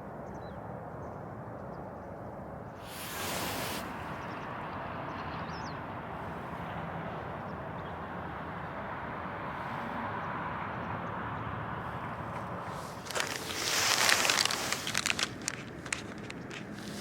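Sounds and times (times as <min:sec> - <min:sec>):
loud hiss: 0:02.8 - 0:04.2
river rushing over stones: 0:12.8 - 0:17.0.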